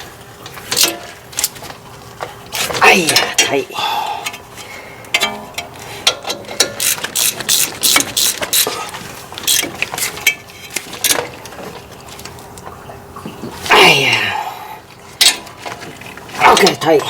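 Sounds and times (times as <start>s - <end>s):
ratchet wrench clicking: 6.6s - 8.8s, 9.5s - 9.7s.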